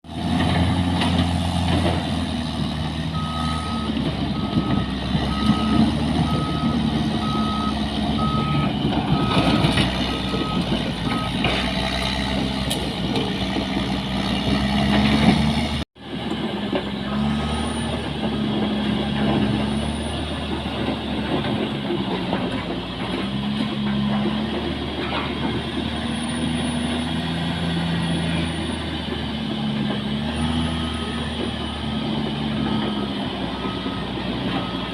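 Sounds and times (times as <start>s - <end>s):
bulldozer diesel engine working: 0.0s - 34.9s
reversing alarm beeping: 3.2s - 11.4s, 30.6s - 34.9s.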